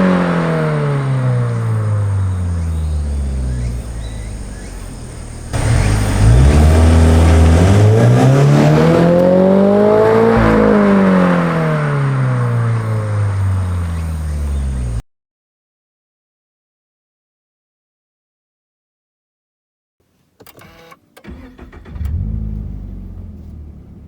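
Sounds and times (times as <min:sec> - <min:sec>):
car engine revving: 0:00.0 - 0:15.0, 0:21.2 - 0:24.0.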